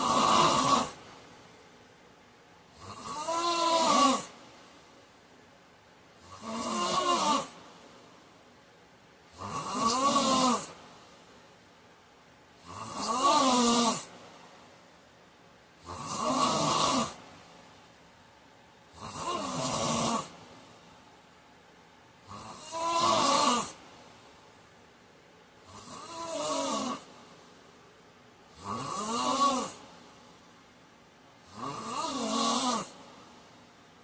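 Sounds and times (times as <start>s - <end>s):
man snoring: 0.0s - 1.0s, 2.8s - 4.4s, 6.2s - 7.6s, 9.3s - 10.8s, 12.6s - 14.1s, 15.8s - 17.2s, 18.9s - 20.4s, 22.2s - 23.8s, 25.6s - 27.1s, 28.5s - 29.8s, 31.4s - 33.0s
quiet breathing: 0.0s - 8.6s, 25.5s - 28.6s, 29.6s - 34.0s.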